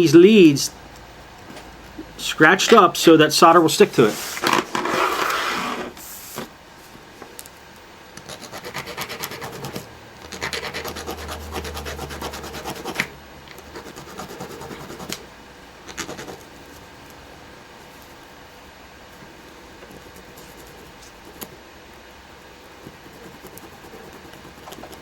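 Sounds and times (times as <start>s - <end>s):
file scraping on metal: 4.0s - 6.0s.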